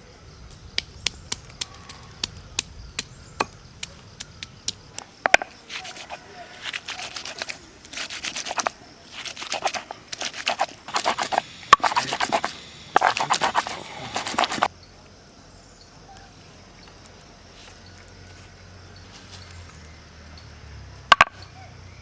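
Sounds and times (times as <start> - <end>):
rapid rasping scraping: 5.7 - 14.7.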